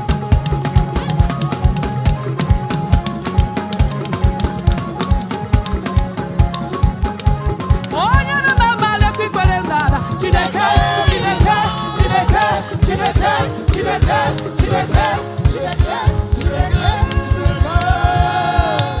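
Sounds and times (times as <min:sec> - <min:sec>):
band playing: 0:00.0 - 0:19.0
fast drum beats: 0:00.0 - 0:19.0
voices singing gospel: 0:08.0 - 0:19.0.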